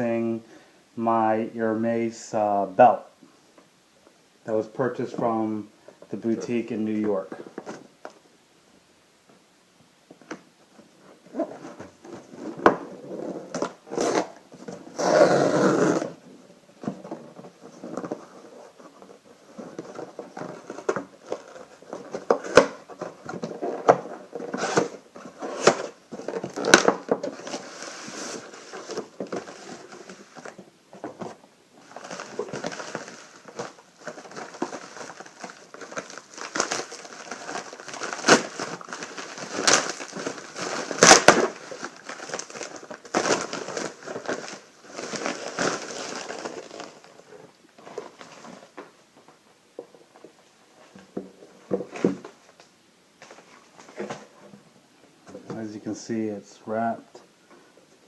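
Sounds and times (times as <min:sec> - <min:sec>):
paper packaging crinkling: 0:16.8 - 0:48.9.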